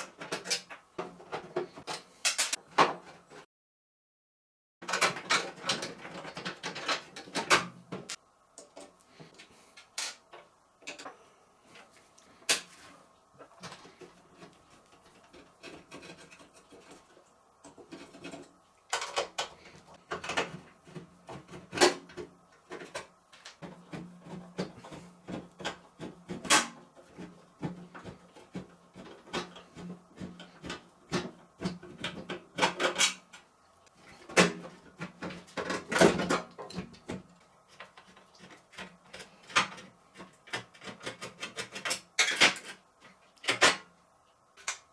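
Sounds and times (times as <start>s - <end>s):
tools and metal parts clicking: 2.3s - 2.6s.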